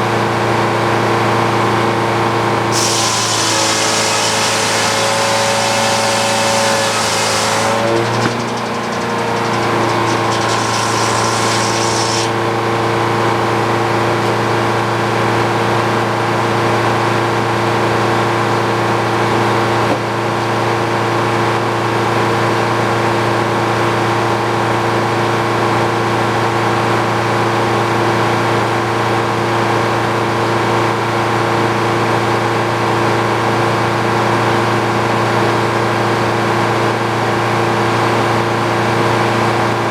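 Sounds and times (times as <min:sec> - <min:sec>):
circular saw blade cutting log: 0:02.7 - 0:15.2.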